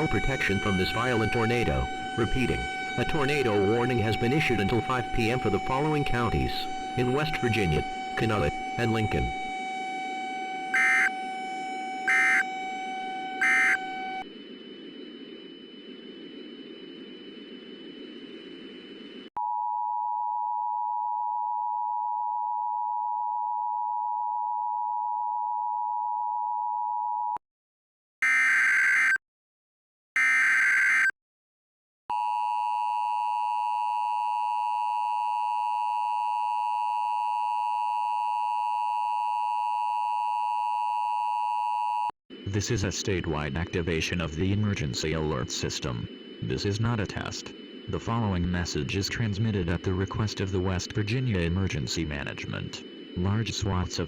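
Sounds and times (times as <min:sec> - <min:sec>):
drone of held tones: 0:00.0 - 0:27.3, 0:28.2 - 0:29.2, 0:30.2 - 0:31.1, 0:43.2 - 0:54.0
screechy digital data bursts: 0:10.8 - 0:11.1, 0:12.1 - 0:12.5, 0:13.2 - 0:14.2
two-tone alert signal: 0:10.8 - 0:11.2, 0:12.1 - 0:12.5, 0:13.2 - 0:14.2, 0:28.2 - 0:29.2, 0:30.2 - 0:31.1.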